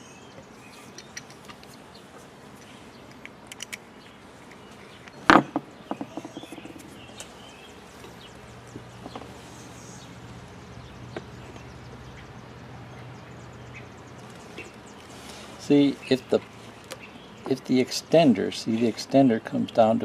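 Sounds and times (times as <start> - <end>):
birds chirping faintly: 0.0 - 20.0
light clicks of hose parts: 2.6 - 3.8.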